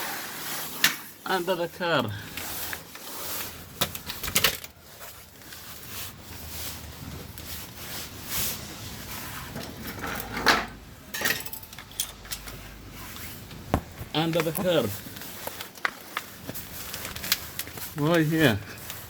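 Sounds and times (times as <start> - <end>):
tools clicking and clattering: 3.8 - 4.8, 9.5 - 16.0.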